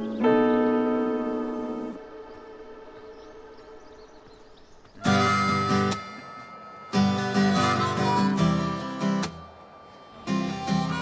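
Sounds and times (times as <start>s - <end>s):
strummed guitar music: 0.0s - 3.3s, 5.0s - 11.0s.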